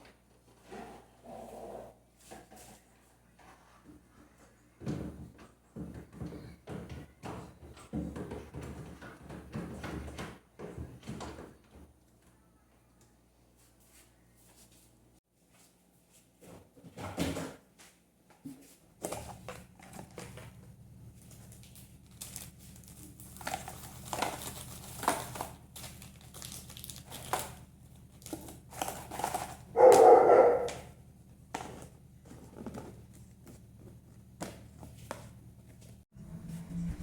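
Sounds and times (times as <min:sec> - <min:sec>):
plastic crinkling: 0:21.2 - 0:29.7
steady low hum: 0:33.1 - 0:37.0.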